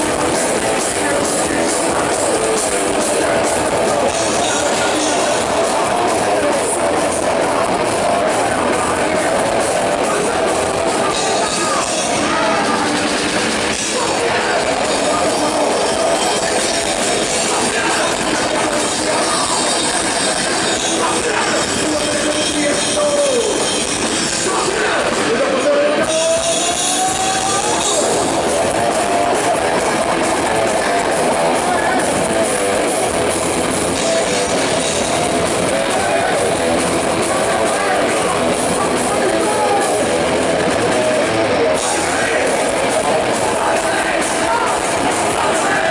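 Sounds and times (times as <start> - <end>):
person singing: 0.0 - 23.7, 24.3 - 32.5, 34.0 - 45.9
heavy metal band playing live: 0.0 - 45.9
pounding drum kit: 0.0 - 45.9.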